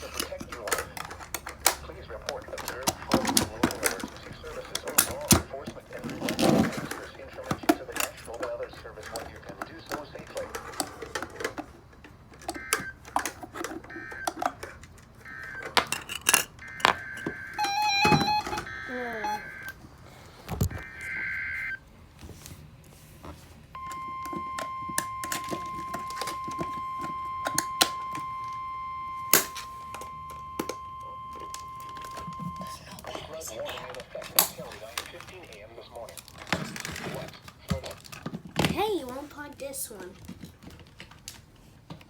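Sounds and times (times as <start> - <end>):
steady warning alarm tone: 12.4 - 19.9, 20.7 - 21.8, 23.8 - 34.2
stepped electronic beeps: 15.3 - 16.0, 16.6 - 19.8, 23.8 - 33.2
warbling two-tone data screech: 16.6 - 19.8, 23.8 - 33.1.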